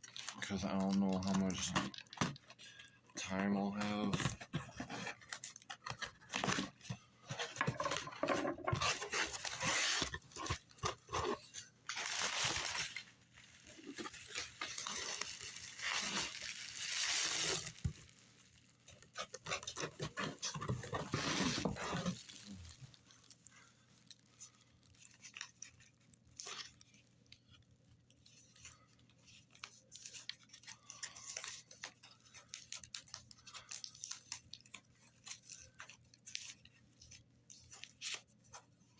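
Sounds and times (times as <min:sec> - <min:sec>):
cardboard tearing and crinkling: 0:00.0 - 0:02.5, 0:03.4 - 0:23.4, 0:24.1 - 0:27.0.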